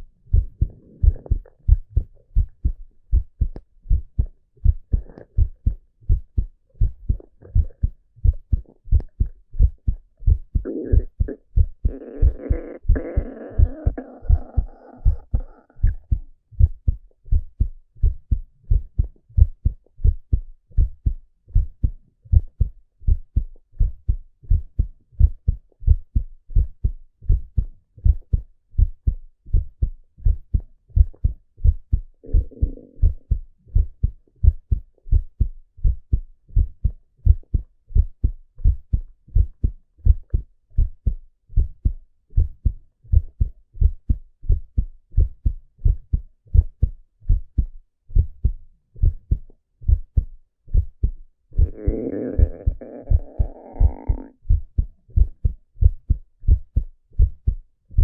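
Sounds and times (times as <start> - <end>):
heartbeat through stethoscope: 0.0 - 58.0.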